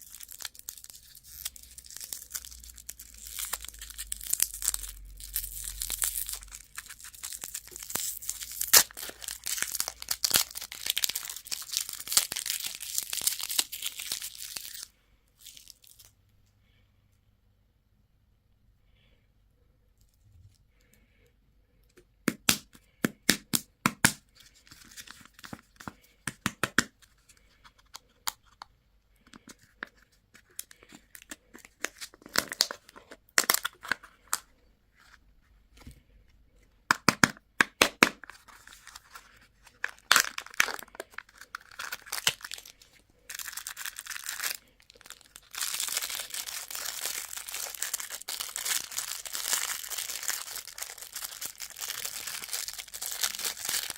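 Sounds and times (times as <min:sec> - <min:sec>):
wrappers crinkling and tearing: 0:00.0 - 0:16.1, 0:38.1 - 0:53.9
packaging clicking and cracking: 0:36.9 - 0:53.9.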